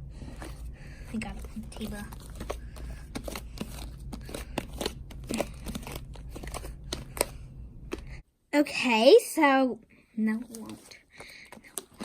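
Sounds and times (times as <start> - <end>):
slime squishing by hand: 0.2 - 8.2.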